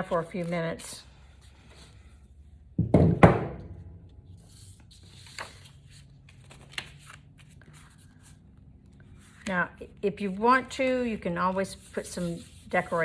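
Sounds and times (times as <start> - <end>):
knocks on a tabletop: 2.8 - 3.8
paper rustling: 4.4 - 9.6.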